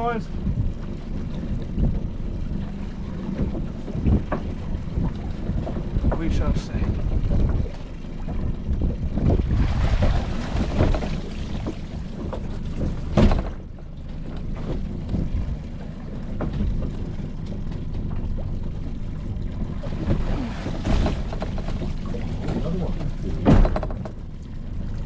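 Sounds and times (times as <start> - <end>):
wind buffeting microphone: 0.3 - 13.7, 14.6 - 16.9.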